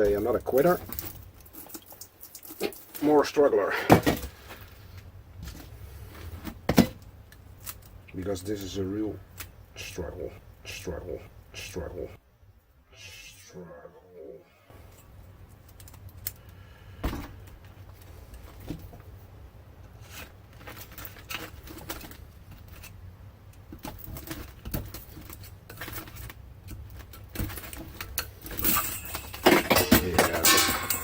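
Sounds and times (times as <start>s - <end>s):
ringing metal clanks: 28.6s - 31.0s.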